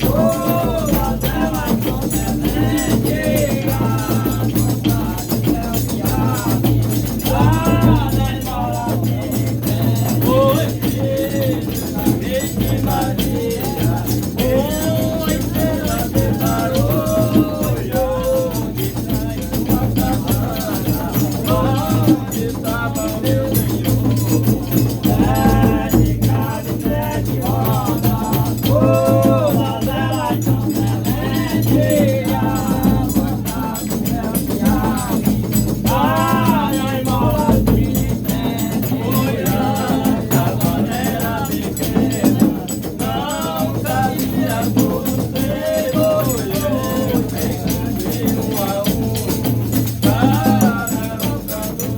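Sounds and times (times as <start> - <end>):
person singing: 0.0 - 51.9
shaken rattle percussion: 0.0 - 51.9.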